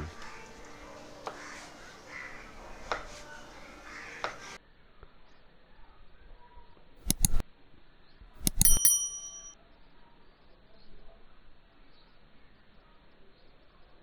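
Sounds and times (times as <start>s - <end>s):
utensils and dishes clinking: 8.4s - 9.5s.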